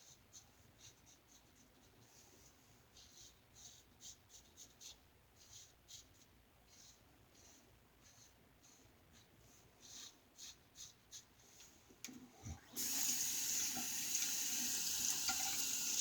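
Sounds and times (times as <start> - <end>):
water running into sink: 12.6 - 16.0.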